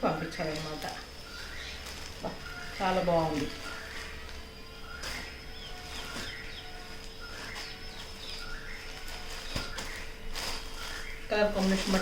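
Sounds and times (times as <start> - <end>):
birds chirping: 0.0 - 12.0
faint steady hum: 0.0 - 12.0.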